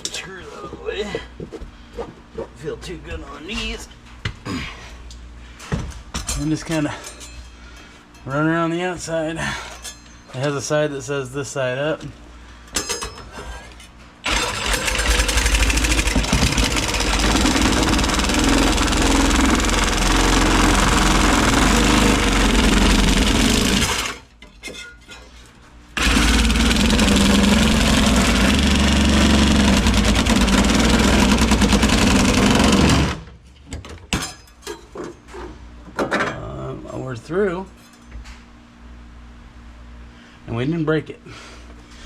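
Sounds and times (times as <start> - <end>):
power cutting tool running: 14.2 - 24.2, 26.0 - 33.2.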